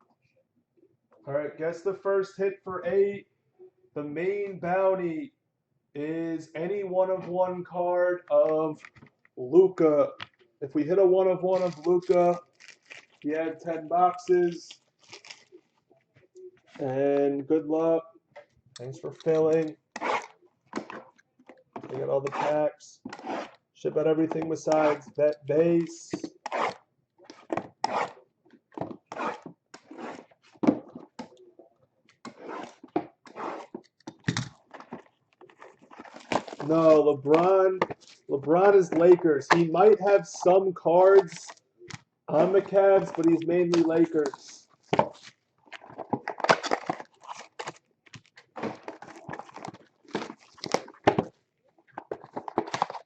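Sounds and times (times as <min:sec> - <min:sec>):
foil wrappers crinkling: 0:11.6 - 0:13.2, 0:14.5 - 0:15.8, 0:42.4 - 0:53.0.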